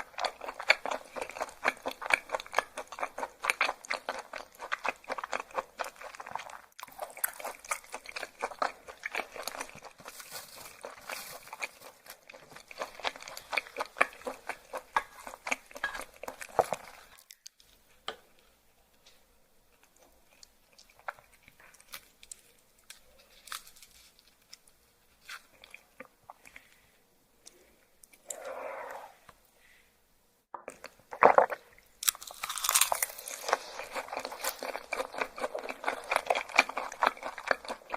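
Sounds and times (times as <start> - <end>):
crisp wet chewing: 30.7 - 37.9.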